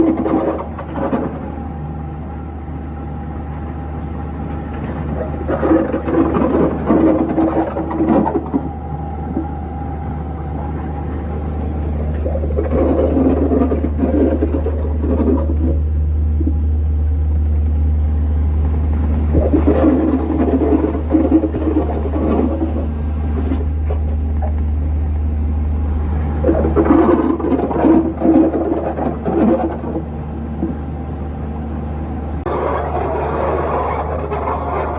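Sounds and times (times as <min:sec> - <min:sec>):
machine straining and creaking: 0:00.0 - 0:01.7, 0:04.5 - 0:16.5, 0:32.5 - 0:34.9
construction machine rumbling: 0:00.0 - 0:34.9.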